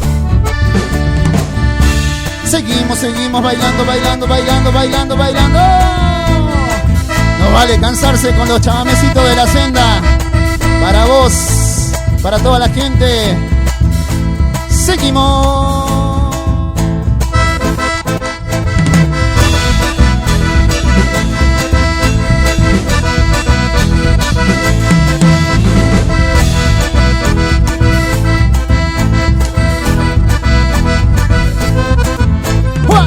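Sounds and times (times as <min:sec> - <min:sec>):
accordion chords: 0:00.0 - 0:33.0
bass: 0:00.0 - 0:33.0
guitar accompaniment: 0:00.0 - 0:33.0.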